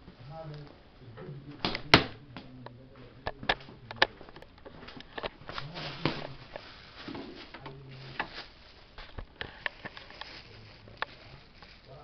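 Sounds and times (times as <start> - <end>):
plastic bag crinkling: 5.0 - 12.0.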